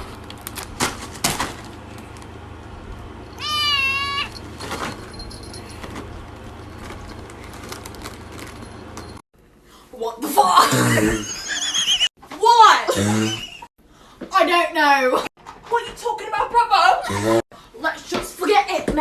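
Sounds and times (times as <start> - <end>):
cat meowing: 3.4 - 4.3.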